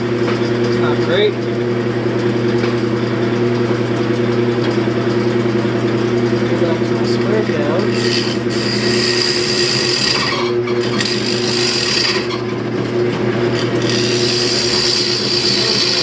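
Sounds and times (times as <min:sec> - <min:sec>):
turning tool cutting wood: 0:00.0 - 0:16.0
wood lathe motor hum: 0:00.0 - 0:16.0.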